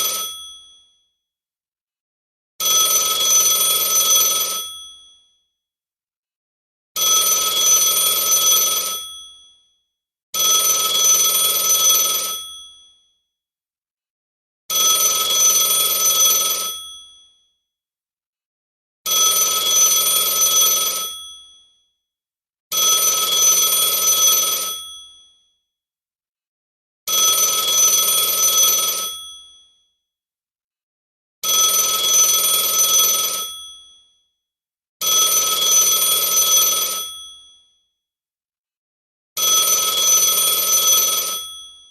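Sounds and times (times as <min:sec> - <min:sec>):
telephone bell ringing: 0:00.0 - 0:01.0, 0:02.6 - 0:05.4, 0:07.0 - 0:09.6, 0:10.4 - 0:13.0, 0:14.7 - 0:17.4, 0:19.1 - 0:21.7, 0:22.7 - 0:25.4, 0:27.1 - 0:29.7, 0:31.4 - 0:34.1, 0:35.0 - 0:37.8, 0:39.4 - 0:41.9.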